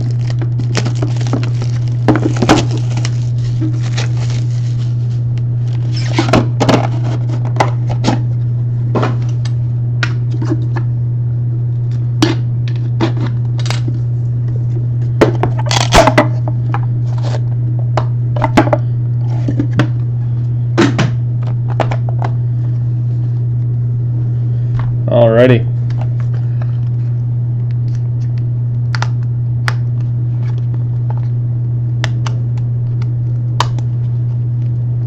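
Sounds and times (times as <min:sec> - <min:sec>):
packaging being torn open: 0:00.0 - 0:04.9, 0:15.6 - 0:16.0
low hum: 0:00.0 - 0:35.0.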